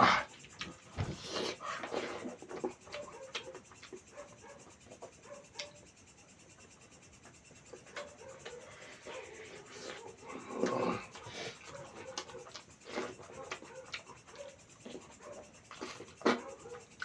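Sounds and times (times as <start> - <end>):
chewing and wet mouth noises: 0.4 - 4.1, 7.7 - 17.0.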